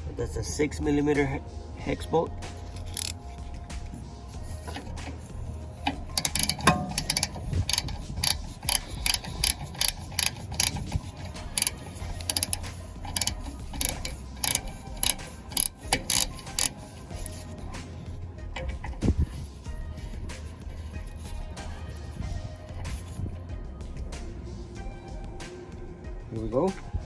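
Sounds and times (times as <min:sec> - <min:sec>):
ratchet wrench clicking: 0:02.4 - 0:23.4.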